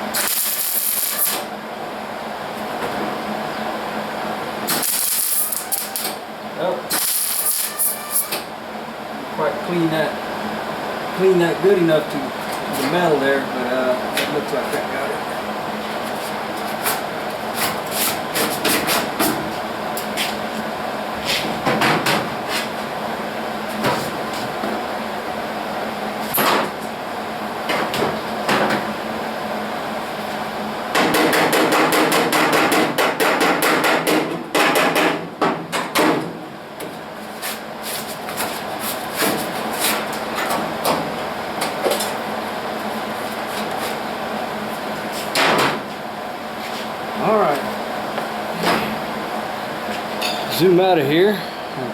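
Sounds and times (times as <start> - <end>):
welder arc crackling: 0.0 - 1.5, 4.7 - 6.2, 6.9 - 8.3.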